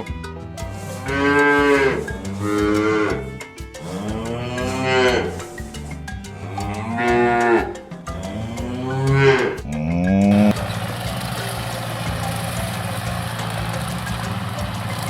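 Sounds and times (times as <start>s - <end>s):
cattle mooing: 0.7s - 5.5s, 6.3s - 10.6s
engine idling: 10.3s - 15.0s.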